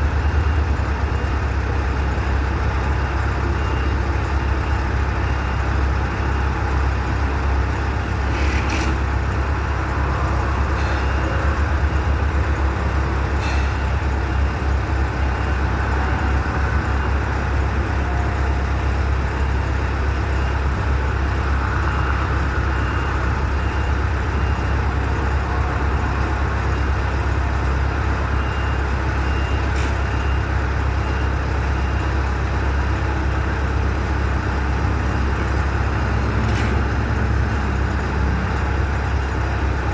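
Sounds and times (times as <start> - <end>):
heavy engine rumble: 0.0 - 39.9.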